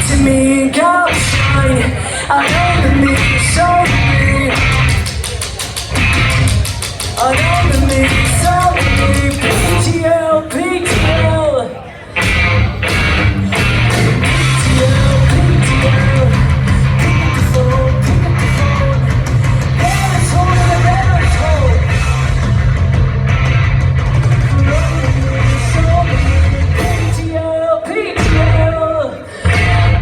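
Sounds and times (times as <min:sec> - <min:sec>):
live rock band playing: 0:00.0 - 0:30.0
singer singing and yelling: 0:00.0 - 0:30.0.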